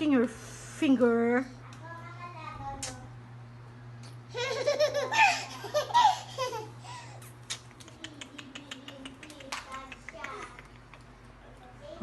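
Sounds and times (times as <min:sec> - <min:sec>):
young child giggling: 0:04.3 - 0:07.1.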